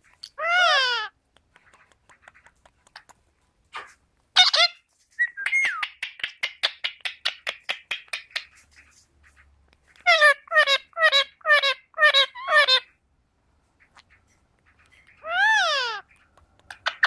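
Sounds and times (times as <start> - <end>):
parakeet clicks: 1.3 - 3.2
parakeet chattering: 5.5 - 8.9, 13.8 - 17.0.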